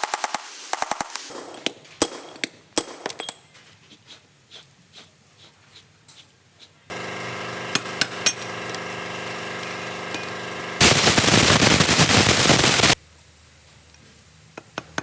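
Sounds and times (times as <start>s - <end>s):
power tool running: 6.9s - 13.0s
loud noisy burst: 10.7s - 13.0s.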